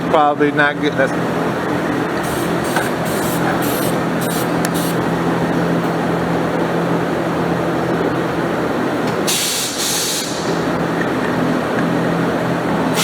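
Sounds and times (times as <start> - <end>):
machinery hum: 0.0 - 13.0
compressed air hissing bursts: 2.2 - 5.0, 9.3 - 10.7.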